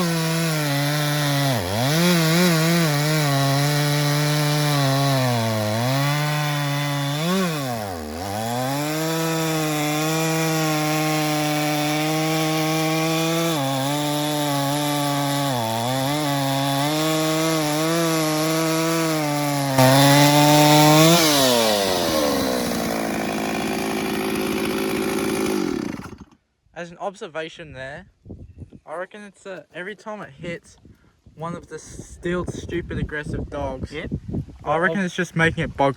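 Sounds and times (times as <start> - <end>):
chainsaw cutting through log: 0.0 - 26.4.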